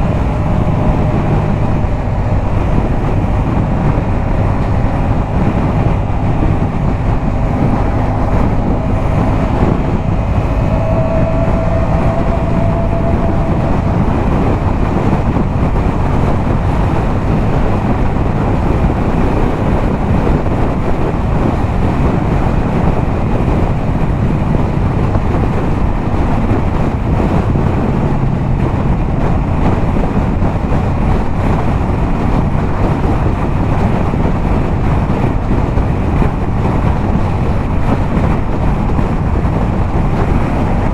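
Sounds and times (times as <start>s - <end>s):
motorcycle engine cruising: 0.0s - 40.9s
wind rushing over microphone: 0.0s - 40.9s.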